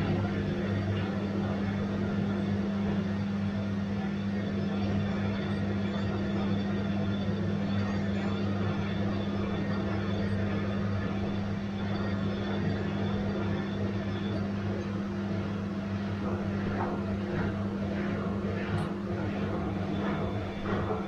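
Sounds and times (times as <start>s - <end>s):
washing machine hum: 0.0s - 21.0s.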